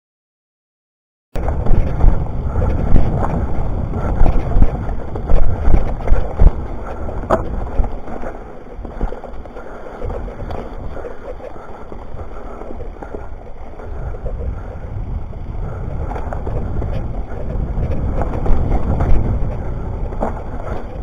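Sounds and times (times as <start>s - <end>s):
bike knocks and rattles: 1.4s - 9.2s, 15.7s - 21.0s
wind buffeting microphone: 1.4s - 21.0s.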